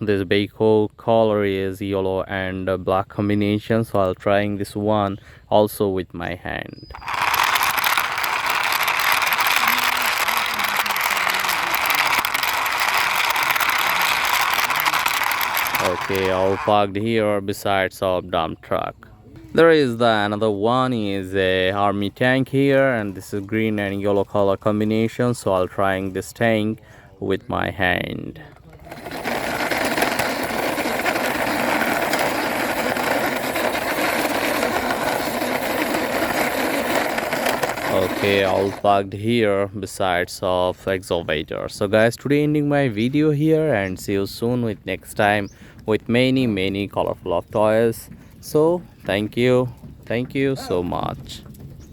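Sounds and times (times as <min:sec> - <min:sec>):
toy plastic wheels rattling: 0:06.9 - 0:16.9, 0:28.6 - 0:39.0.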